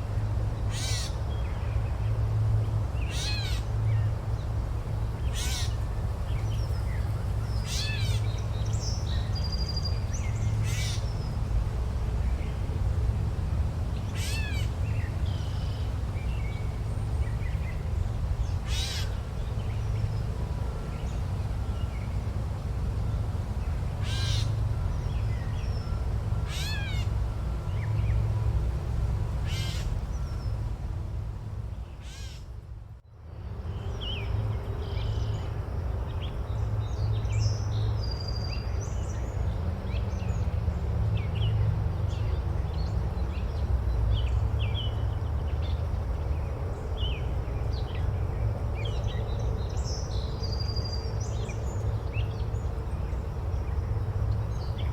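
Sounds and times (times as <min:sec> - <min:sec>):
loud bird calls: 0:00.7 - 0:01.3, 0:03.0 - 0:03.7, 0:05.2 - 0:05.8, 0:07.6 - 0:08.4, 0:10.6 - 0:11.1, 0:14.1 - 0:15.8, 0:18.6 - 0:19.2, 0:24.0 - 0:24.6, 0:26.4 - 0:27.2, 0:29.4 - 0:30.4, 0:32.0 - 0:32.5.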